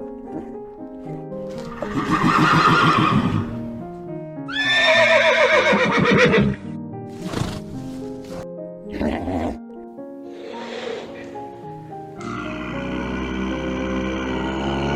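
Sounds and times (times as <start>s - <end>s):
background music: 0.0s - 14.9s
loud animal calls: 10.3s - 11.4s, 12.2s - 14.9s.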